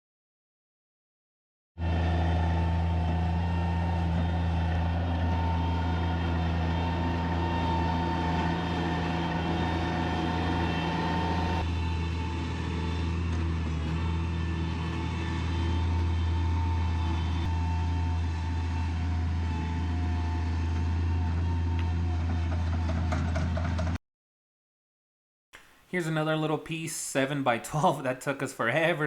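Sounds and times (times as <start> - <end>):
heavy engine humming: 1.8 - 24.0.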